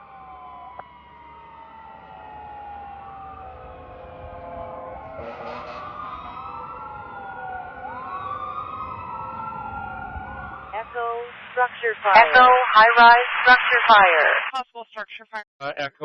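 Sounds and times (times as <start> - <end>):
fire truck sirens wailing: 0.0 - 14.2
short noisy horn blast: 5.2 - 5.9
steady horn note: 5.2 - 5.9.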